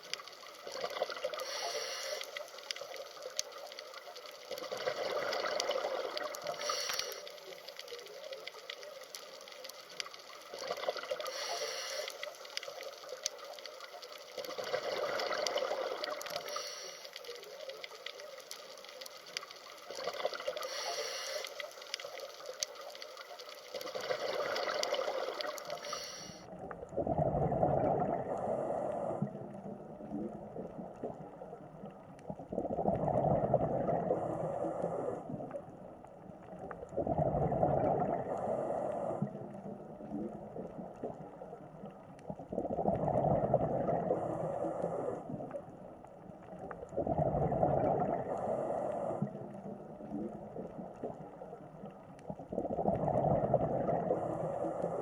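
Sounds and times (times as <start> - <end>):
bubbling exhale: 0.0 - 3.6, 4.2 - 7.6, 10.5 - 13.0, 14.0 - 17.5, 19.9 - 22.8, 23.7 - 29.8, 52.5 - 55.0
diver breathing through regulator: 1.3 - 2.5, 6.5 - 7.4, 11.2 - 12.4, 16.3 - 17.2, 20.6 - 21.7, 25.8 - 26.5.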